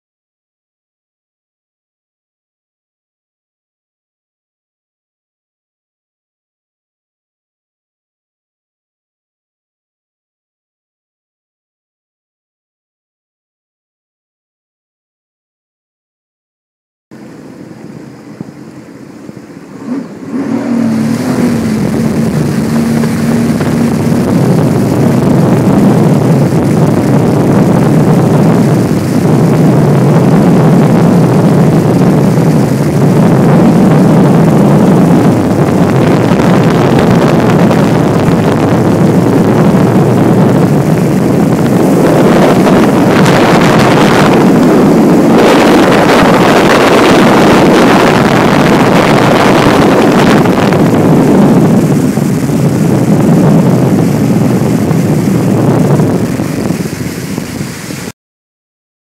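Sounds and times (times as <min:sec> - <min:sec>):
personal watercraft engine running: 0:17.2 - 0:58.1
wind noise on microphone: 0:17.2 - 0:58.2.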